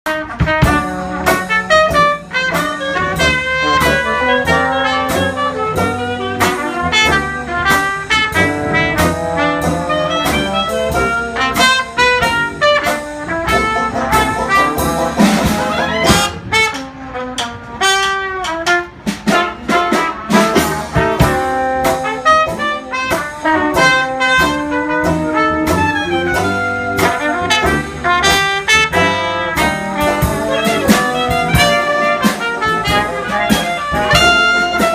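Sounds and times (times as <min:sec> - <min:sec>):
live jazz band playing: 0:00.0 - 0:34.9.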